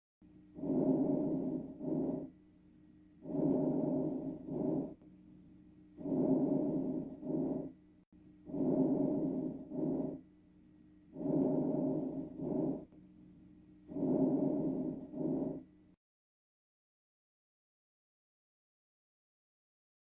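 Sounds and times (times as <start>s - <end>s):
faint steady hum: 0.2s - 16.0s
lung breath sounds: 0.5s - 2.3s, 3.2s - 5.0s, 6.0s - 7.8s, 8.5s - 10.2s, 11.1s - 13.0s, 13.9s - 15.7s.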